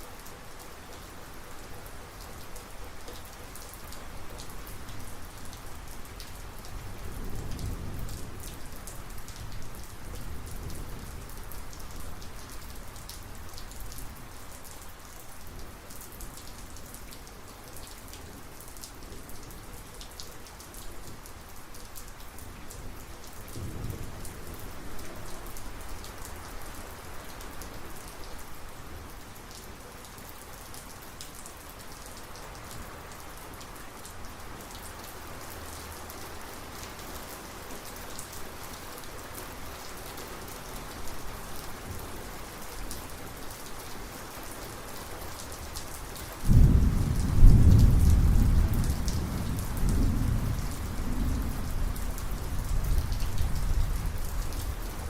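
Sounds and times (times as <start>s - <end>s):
steady rain falling: 0.0s - 55.0s
distant thunder rumble: 46.5s - 52.0s.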